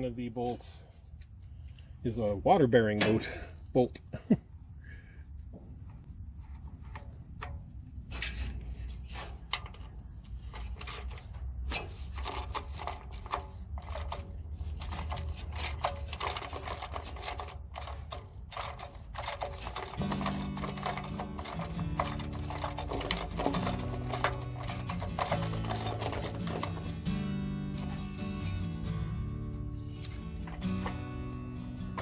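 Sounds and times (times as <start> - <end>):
ratchet wrench clicking: 10.5 - 27.1.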